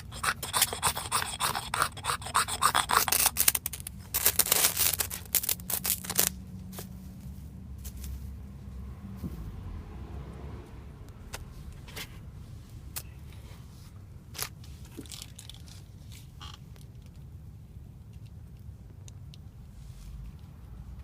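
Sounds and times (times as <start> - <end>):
ferro rod scraped with scraper: 0.0 - 5.1
low steady rumble: 2.8 - 21.0.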